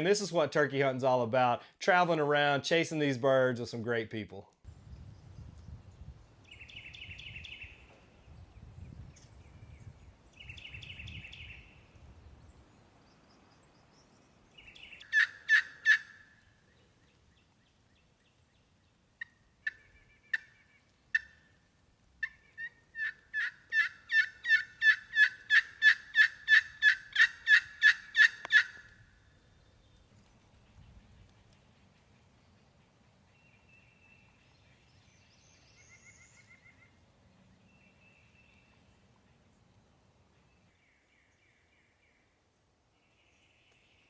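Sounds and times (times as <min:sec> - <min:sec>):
turkey yelping: 0:14.7 - 0:16.3, 0:19.2 - 0:21.4, 0:22.2 - 0:29.0
turkey gobbling: 0:14.8 - 0:16.3, 0:19.2 - 0:21.4, 0:22.2 - 0:29.0
turkey clucking: 0:15.0 - 0:16.2, 0:19.2 - 0:21.4, 0:22.2 - 0:28.9.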